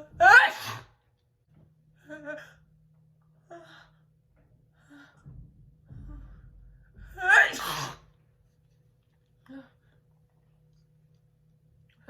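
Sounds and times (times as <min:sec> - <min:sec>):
woman sneezing: 0:07.3 - 0:08.1.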